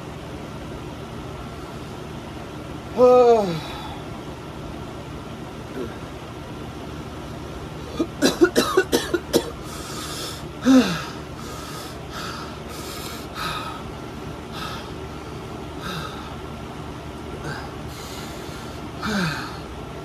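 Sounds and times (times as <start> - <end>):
person groaning: 3.0 - 4.0, 5.7 - 6.0, 10.6 - 11.2, 19.0 - 19.6
heavy breathing: 3.4 - 4.1, 9.6 - 16.5, 17.4 - 19.8
person coughing: 7.9 - 9.8, 10.6 - 11.2.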